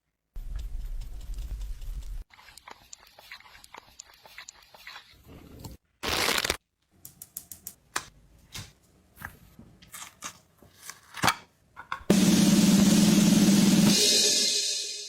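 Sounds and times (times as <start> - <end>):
brittle cracks and crunches: 6.0 - 6.6
loud music with drums: 12.1 - 15.0.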